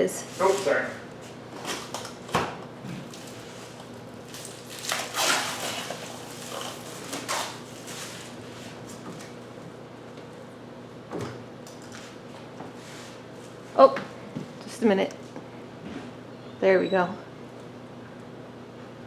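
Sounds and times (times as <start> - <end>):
packaging rustling: 3.0 - 9.0.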